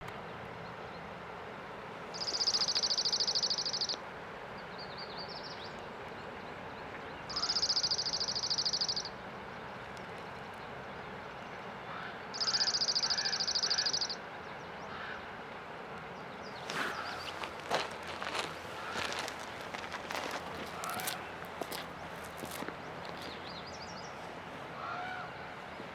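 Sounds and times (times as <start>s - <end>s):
songbird high-pitched trill: 2.1s - 4.0s, 7.3s - 9.2s, 12.4s - 14.2s
river water rushing: 15.2s - 25.9s.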